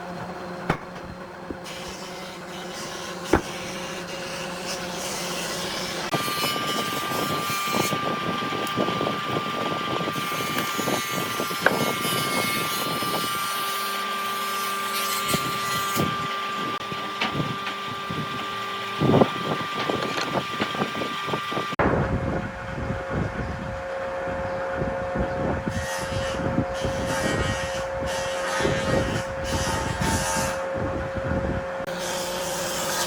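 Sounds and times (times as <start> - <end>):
power tool whining: 0.0 - 21.8.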